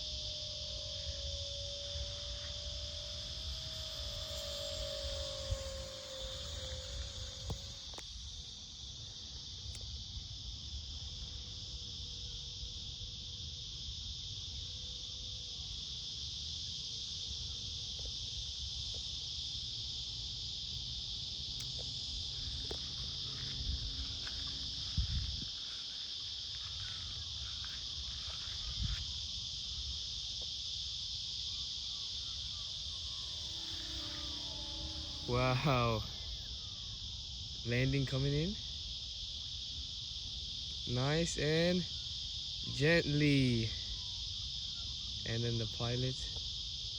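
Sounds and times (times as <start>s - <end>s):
insects shrilling: 0.0s - 8.2s, 21.6s - 29.9s, 31.1s - 38.6s.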